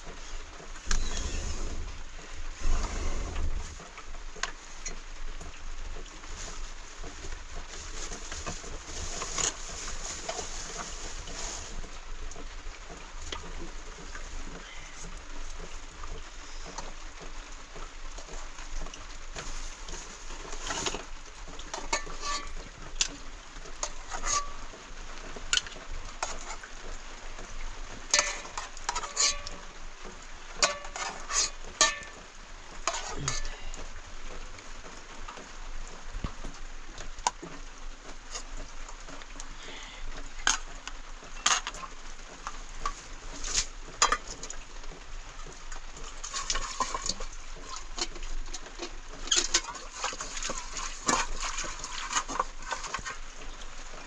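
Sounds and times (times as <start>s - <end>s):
steady hiss: 0.0s - 12.5s
pots and utensils clicking: 21.7s - 22.7s, 28.1s - 29.7s, 30.6s - 32.2s, 46.2s - 53.2s.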